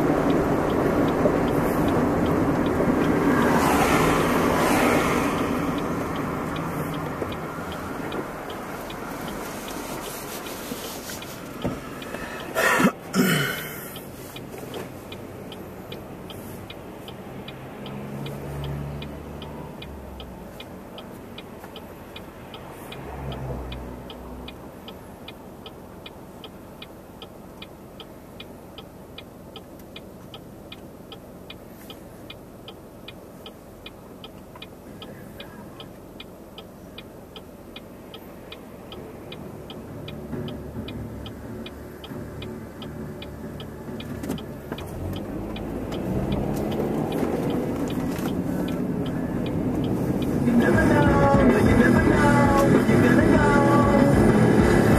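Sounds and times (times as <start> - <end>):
car engine and road hum: 0.0 - 54.9
turn signal clicking: 0.0 - 54.9.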